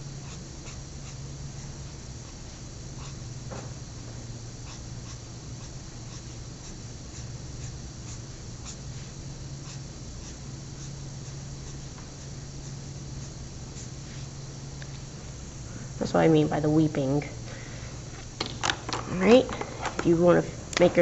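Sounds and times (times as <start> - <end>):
steady low hum: 0.0 - 21.0
drawing strokes on paper: 0.2 - 3.2, 4.6 - 14.4.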